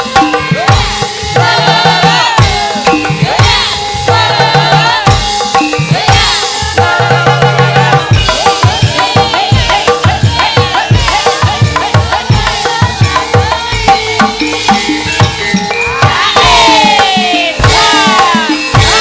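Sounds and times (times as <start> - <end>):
woman singing gliding line: 0.2 - 14.6, 16.0 - 19.0
metallophone tones: 12.6 - 19.0.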